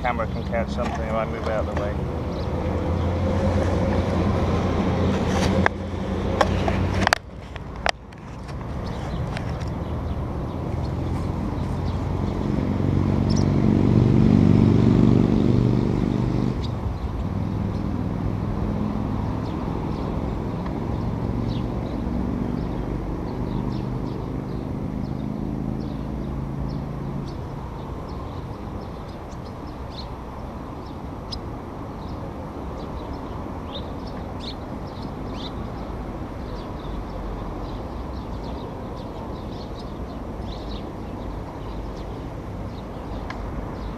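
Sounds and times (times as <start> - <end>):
passing vehicle engine: 0.0 - 31.4
outdoor background noise: 0.0 - 43.9
swifts calling: 13.2 - 13.7, 23.4 - 43.9.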